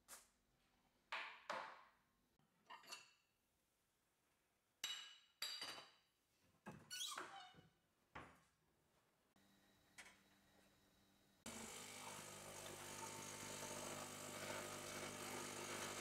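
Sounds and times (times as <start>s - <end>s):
kitchenware knocking and clinking: 4.8s - 6.0s.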